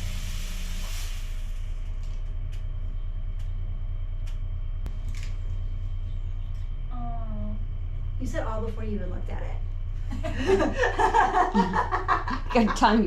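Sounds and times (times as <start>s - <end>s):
fog machine hissing: 0.0s - 1.8s
steady low hum: 0.0s - 13.0s.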